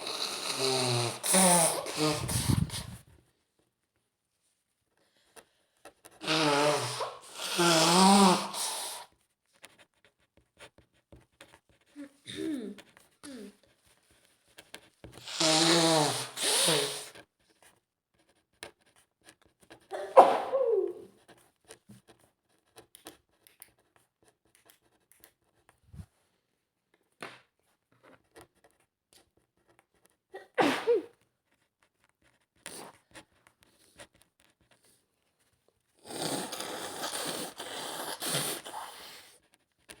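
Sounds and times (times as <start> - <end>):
nose-blowing into a tissue: 0.0 - 3.1, 6.2 - 9.1, 15.2 - 17.2, 30.4 - 31.2, 36.0 - 39.4
woman sneezing: 20.0 - 21.1, 30.4 - 31.1.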